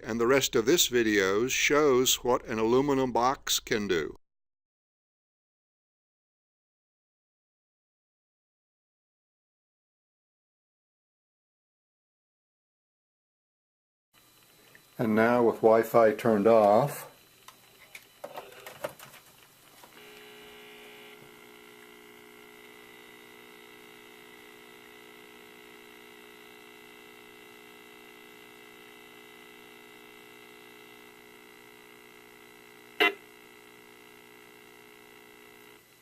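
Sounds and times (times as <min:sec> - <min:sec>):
meter speaker multi-tone hum: 0:00.0 - 0:04.2, 0:14.2 - 0:36.0.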